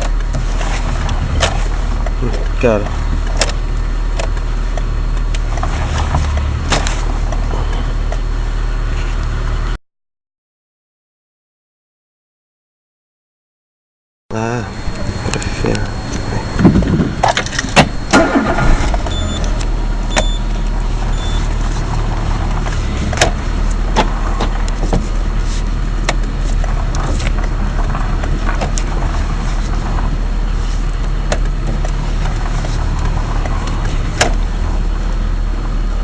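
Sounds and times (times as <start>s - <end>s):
car engine running: 0.0s - 9.8s, 14.3s - 36.0s
short high beeps: 14.3s - 20.5s, 21.1s - 21.5s.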